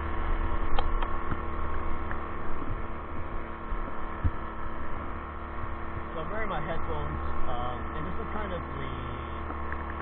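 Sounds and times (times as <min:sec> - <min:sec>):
wind rumble on microphone: 0:00.0 - 0:06.2
electric bike drive hum: 0:00.0 - 0:10.0.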